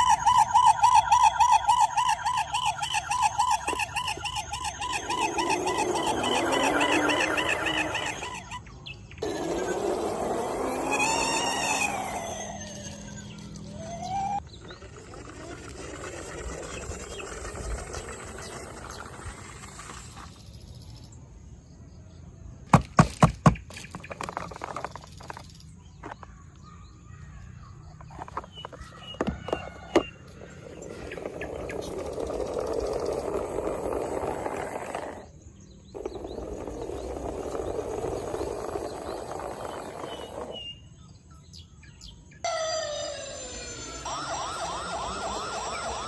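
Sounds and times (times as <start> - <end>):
rising and falling wailing tone: 0.0 - 8.5, 9.2 - 14.4, 42.5 - 46.0
toy warbling siren: 0.0 - 14.4, 15.2 - 20.3, 28.1 - 35.3, 36.0 - 40.6, 42.4 - 46.0.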